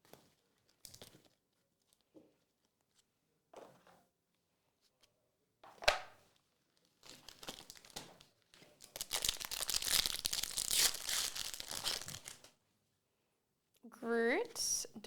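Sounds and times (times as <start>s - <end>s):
wrapper crinkling: 7.0s - 12.5s.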